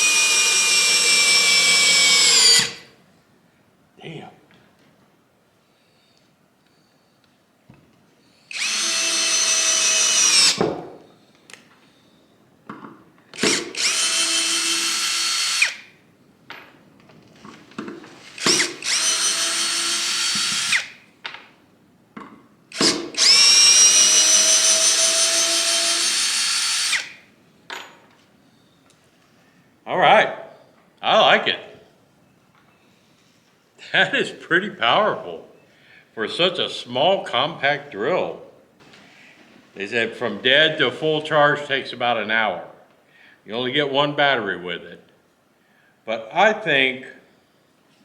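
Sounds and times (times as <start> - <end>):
cordless drill motor whine: 0.0 - 2.8, 8.5 - 10.6, 13.4 - 15.8, 18.2 - 21.0, 22.7 - 27.2.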